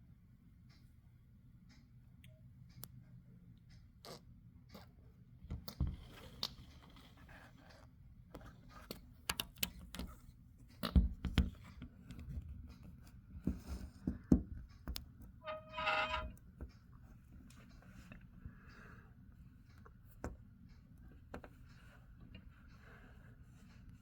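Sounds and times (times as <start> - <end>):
clicks knocks and scrapes: 15.4 - 16.4.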